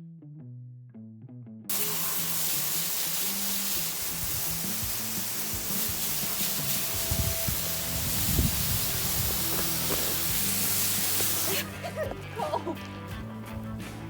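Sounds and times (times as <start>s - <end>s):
loud spraying hiss: 1.7s - 11.8s
background music: 1.7s - 14.0s.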